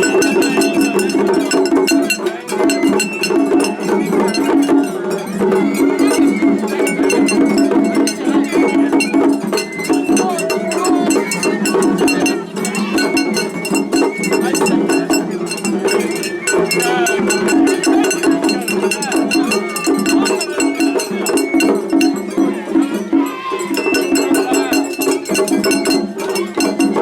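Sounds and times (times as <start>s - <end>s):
drums: 0.0s - 27.0s
wavering melody line: 5.8s - 22.7s.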